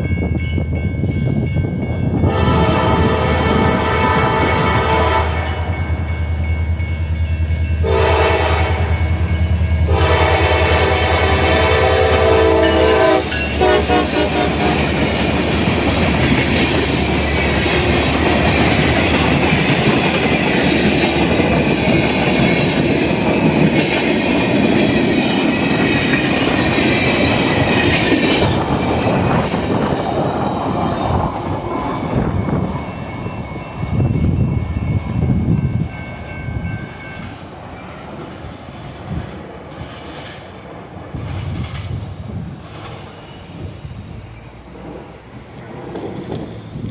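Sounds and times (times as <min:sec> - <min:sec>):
freight train rumble: 0:00.0 - 0:46.9
train air horn: 0:02.3 - 0:05.8, 0:07.8 - 0:09.1, 0:09.9 - 0:15.0
high wheel squeal: 0:42.8 - 0:44.7.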